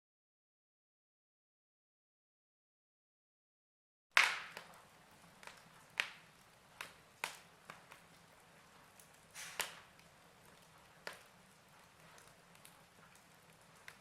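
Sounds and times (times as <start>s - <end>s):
fire crackling: 4.1s - 14.0s
faint hiss: 6.0s - 10.4s.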